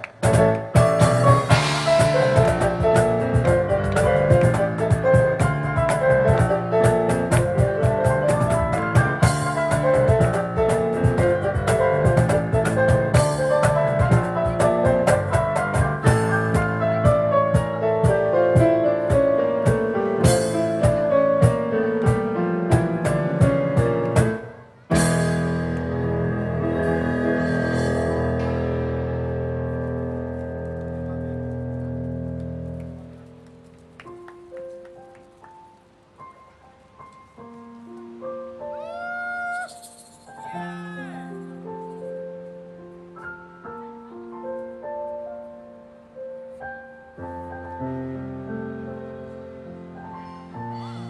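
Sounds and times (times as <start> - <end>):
cajon beats: 0.0 - 26.1
fast piano lines: 0.0 - 51.0.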